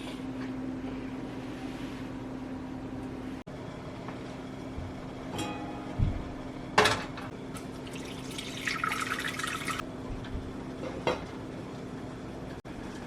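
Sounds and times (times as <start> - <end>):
steady low hum: 0.0 - 13.0
water running: 7.6 - 9.8.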